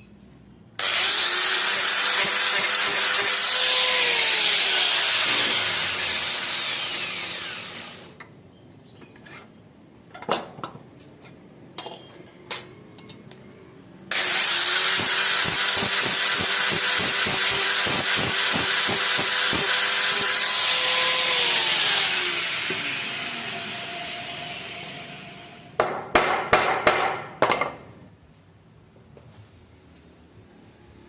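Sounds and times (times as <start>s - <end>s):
electric power tool running: 0.8s - 8.2s, 14.1s - 25.8s.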